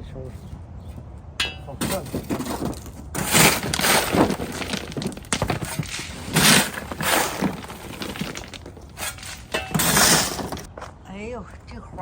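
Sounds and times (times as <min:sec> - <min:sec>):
stones clattering and scraping: 0:01.8 - 0:10.7.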